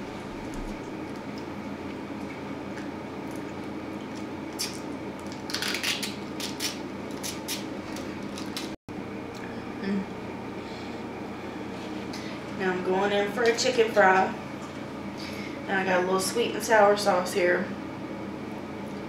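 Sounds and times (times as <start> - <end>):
room hum: 0.0 - 19.0
food wrapper crinkling: 5.2 - 8.7.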